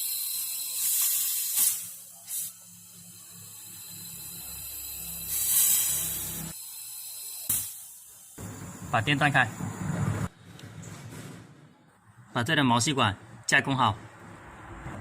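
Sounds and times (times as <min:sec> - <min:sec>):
gas hissing from tubes: 0:00.0 - 0:10.0.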